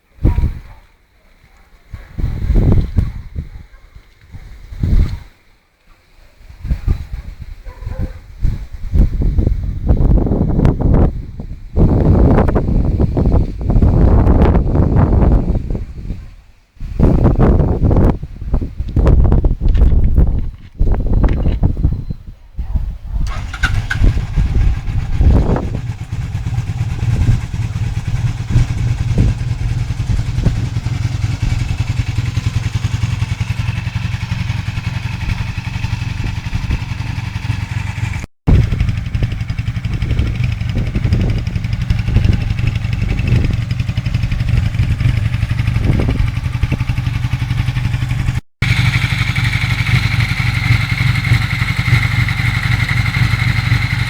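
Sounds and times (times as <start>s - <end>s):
engine throttle blips: 23.3s - 54.0s
motorcycle engine idling: 23.3s - 54.0s.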